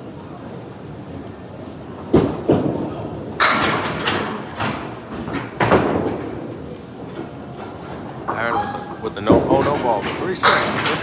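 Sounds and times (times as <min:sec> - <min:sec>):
wooden pins clattering: 0:07.1 - 0:11.0.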